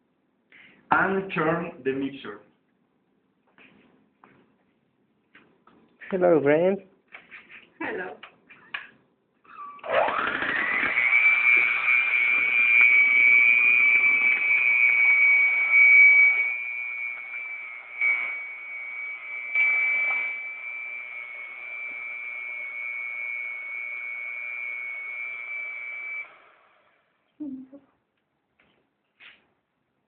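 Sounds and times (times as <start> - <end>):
kitchen mixer motor whining: 9.8 - 27.0.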